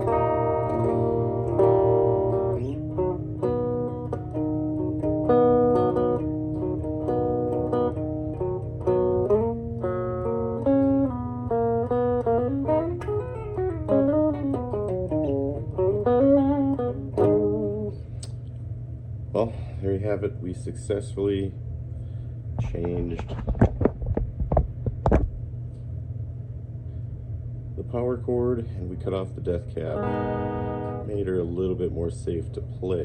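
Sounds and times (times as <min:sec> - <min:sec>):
electric guitar notes and chords: 0:00.0 - 0:18.4, 0:29.8 - 0:31.4
low amplifier hum: 0:00.0 - 0:33.0.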